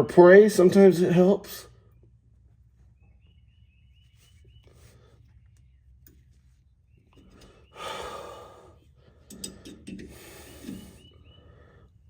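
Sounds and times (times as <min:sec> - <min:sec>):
heavy breathing: 0:07.4 - 0:12.0
man sighing heavily: 0:07.8 - 0:08.8.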